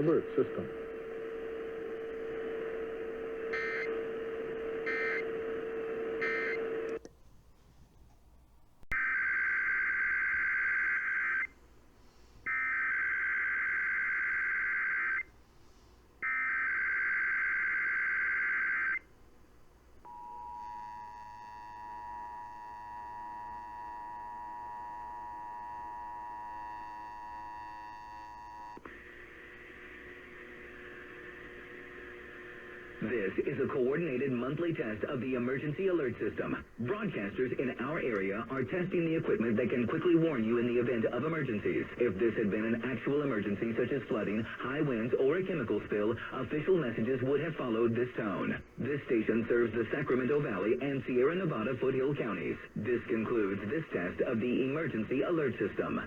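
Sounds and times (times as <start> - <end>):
radio hiss: 0.0 - 7.0, 28.7 - 56.0.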